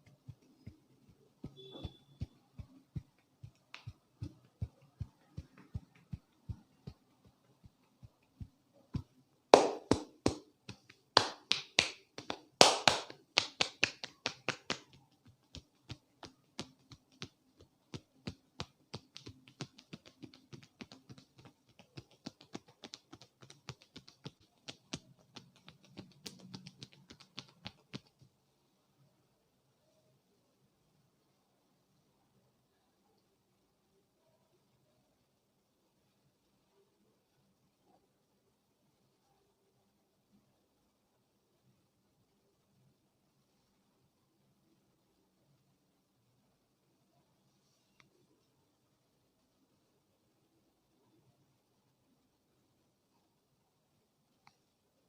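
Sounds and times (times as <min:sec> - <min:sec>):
fast flurry of slaps: 0:00.0 - 0:28.3
hand taps of head massage: 0:00.0 - 0:28.3.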